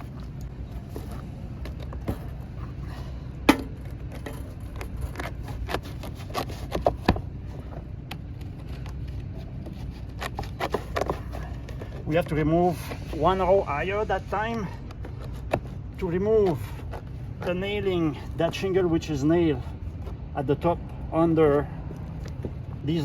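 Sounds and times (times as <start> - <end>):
steady low rumble: 0.0 - 23.0
hand tools prying roof vent: 3.4 - 7.3, 9.7 - 12.3.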